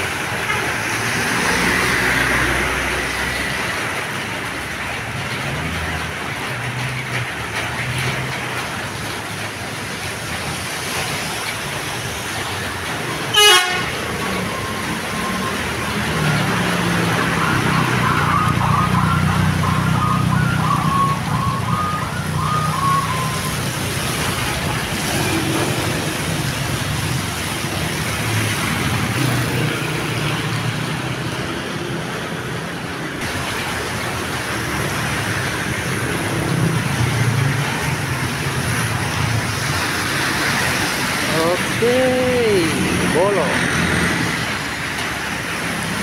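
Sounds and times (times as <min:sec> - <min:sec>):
road traffic noise: 0:00.0 - 0:46.0
bus horn playing tune: 0:13.3 - 0:14.0.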